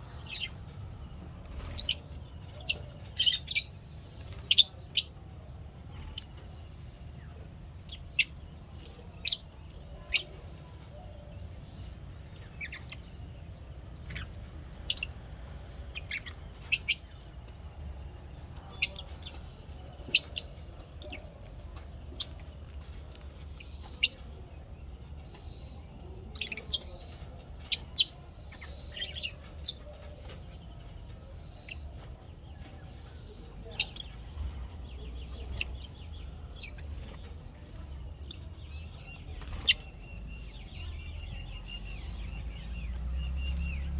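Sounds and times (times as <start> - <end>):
lovebirds chirping: 0.0 - 43.9.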